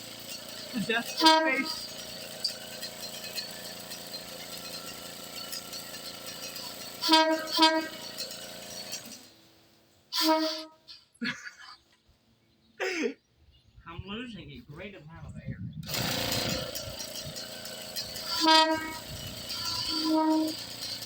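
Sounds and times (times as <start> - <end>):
train horn short weak toots: 1.1 - 1.8, 7.0 - 8.1, 10.2 - 11.0, 18.3 - 20.6.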